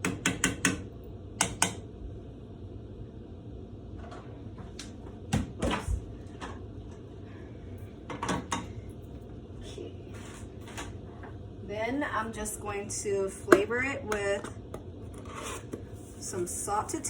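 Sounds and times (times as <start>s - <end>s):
kitchen knocks and clatters: 8.1s - 8.7s.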